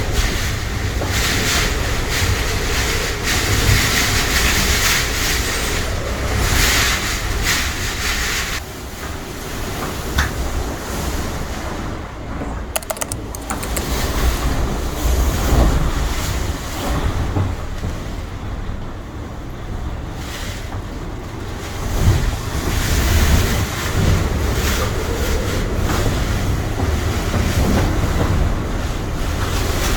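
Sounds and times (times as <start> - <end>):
sharp rattling clicks: 12.8 - 14.0.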